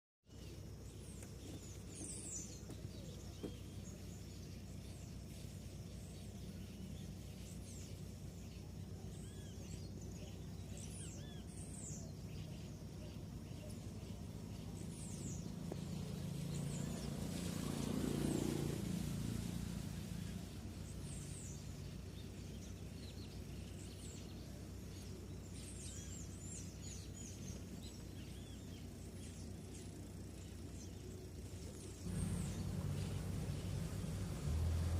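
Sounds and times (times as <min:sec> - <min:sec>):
small birds chirping: 0:00.2 - 0:34.9
steady low rumble: 0:00.5 - 0:34.9
broad swell of noise: 0:14.9 - 0:21.4, 0:32.0 - 0:34.9.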